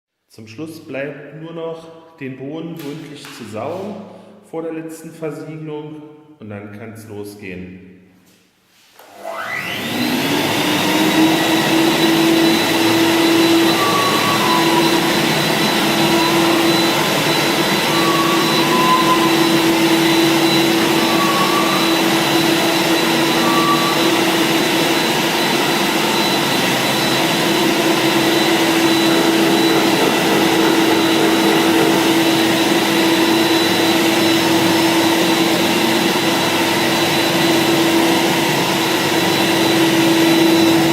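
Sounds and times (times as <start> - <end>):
vacuum cleaner whining: 9.0 - 40.9.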